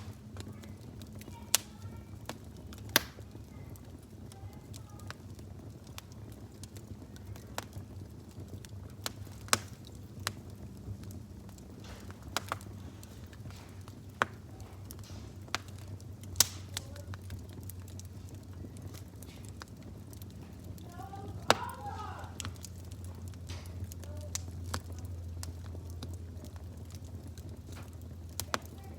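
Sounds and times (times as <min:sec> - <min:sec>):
low steady hum: 0:00.0 - 0:28.9
wood fire crackling: 0:00.0 - 0:28.9.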